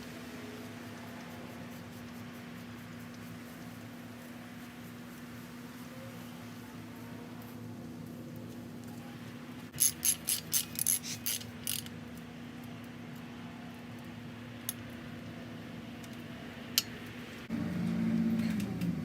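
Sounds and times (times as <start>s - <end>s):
sharp ratcheting clicks: 9.8s - 11.9s.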